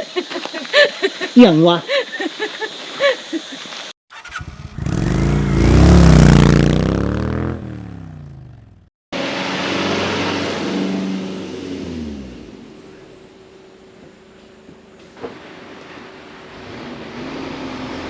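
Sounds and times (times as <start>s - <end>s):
vehicle engine revving: 4.1s - 8.9s.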